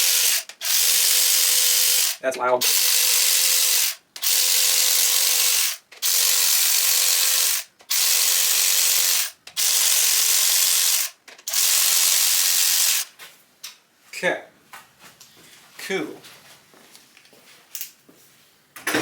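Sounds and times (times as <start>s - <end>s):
power ratchet whirring: 0.0s - 13.1s.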